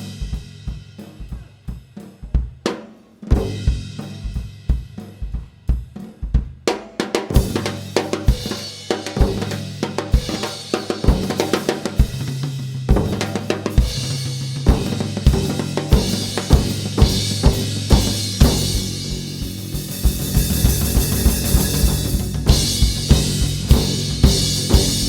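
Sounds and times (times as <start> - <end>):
kick drum beat: 14.7 - 25.0.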